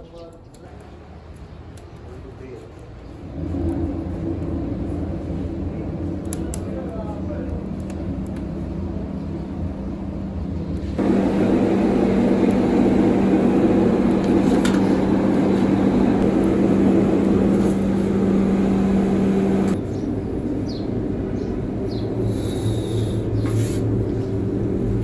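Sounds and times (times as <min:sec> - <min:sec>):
machine rumble: 0:07.2 - 0:25.0
machinery humming: 0:11.0 - 0:25.0.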